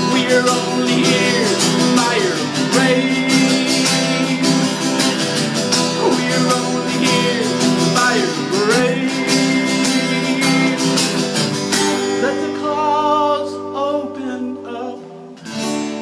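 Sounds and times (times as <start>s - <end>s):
sliding lead melody: 0.0s - 12.6s
strummed acoustic guitar: 0.0s - 16.0s.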